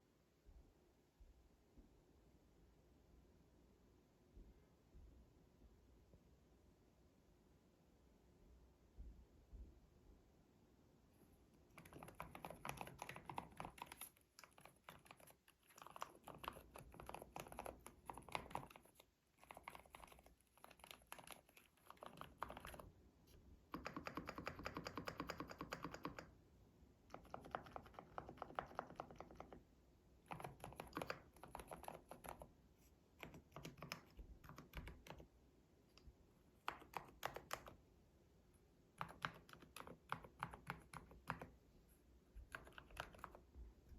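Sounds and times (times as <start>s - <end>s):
quiet mechanical keyboard typing: 11.6s - 23.0s, 23.6s - 26.4s, 27.0s - 37.9s, 38.8s - 41.6s, 42.4s - 43.6s.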